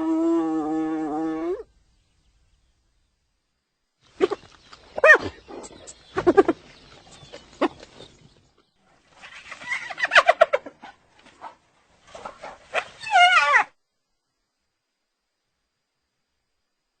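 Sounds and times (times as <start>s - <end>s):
hyenas giggling: 4.2s - 8.1s.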